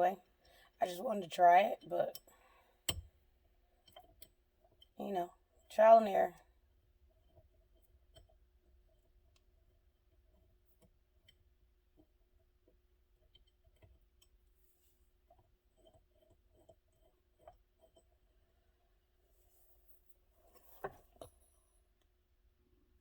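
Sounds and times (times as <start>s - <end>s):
small parts clicking and tapping: 2.1s - 3.2s.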